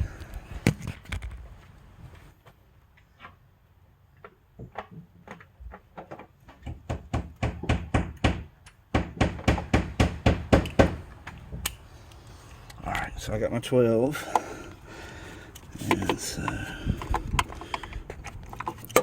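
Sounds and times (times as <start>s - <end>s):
sharp knocks and clicks: 4.2s - 11.8s.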